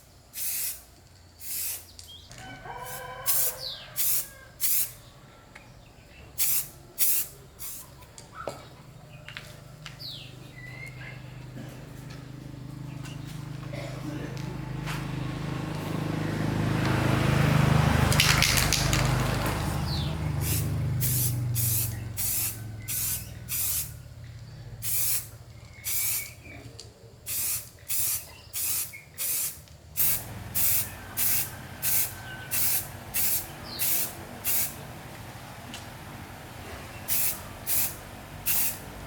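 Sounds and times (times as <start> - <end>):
pressurised spray hissing: 0.0 - 1.9, 2.9 - 5.0, 6.4 - 8.0, 19.9 - 24.0, 24.8 - 26.4, 27.3 - 34.8, 37.0 - 39.0
motor hum: 30.2 - 39.0.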